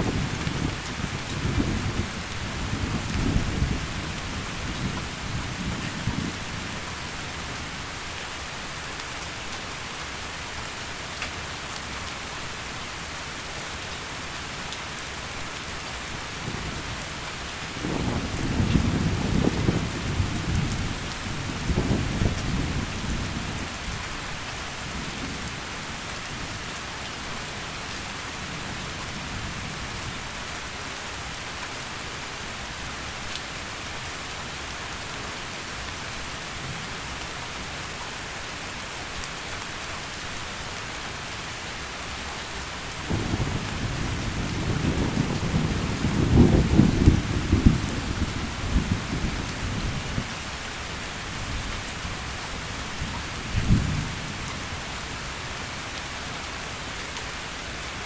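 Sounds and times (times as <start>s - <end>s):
low rumble of thunder: 0.0s - 6.7s, 17.8s - 23.9s, 43.0s - 50.3s, 53.0s - 54.8s
heavy rain falling: 0.0s - 58.0s.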